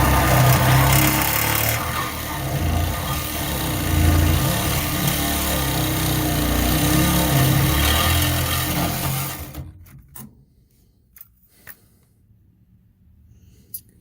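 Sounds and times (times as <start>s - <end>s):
power tool cutting steel: 0.0s - 9.7s.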